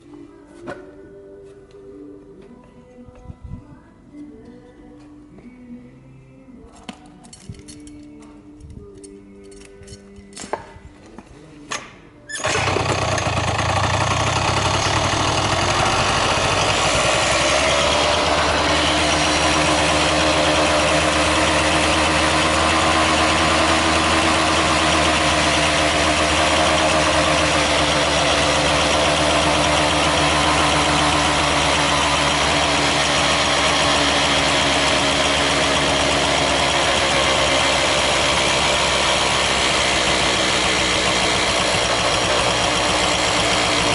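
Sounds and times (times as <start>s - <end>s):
two-stroke engine idling: 12.4s - 43.9s.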